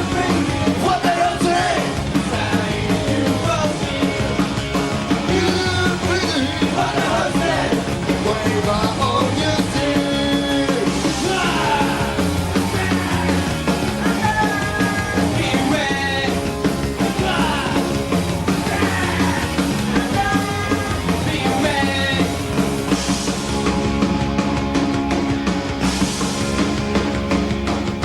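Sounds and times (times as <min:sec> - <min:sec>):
loud punk rock music: 0:00.0 - 0:28.0
person singing: 0:05.3 - 0:22.4.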